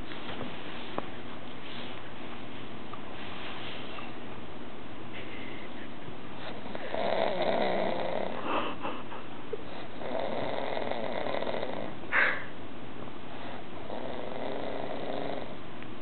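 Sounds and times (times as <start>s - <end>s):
man snoring: 6.7s - 8.4s, 10.0s - 11.9s, 13.8s - 15.6s.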